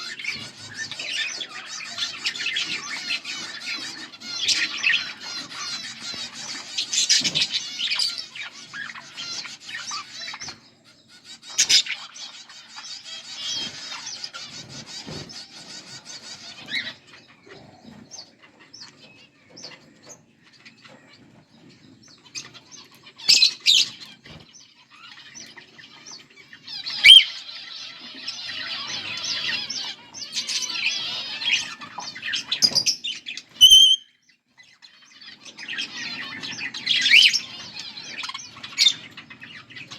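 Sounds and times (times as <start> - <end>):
budgerigars chattering and warbling: 0.0 - 39.9
sharp single bird calls: 33.6 - 34.0.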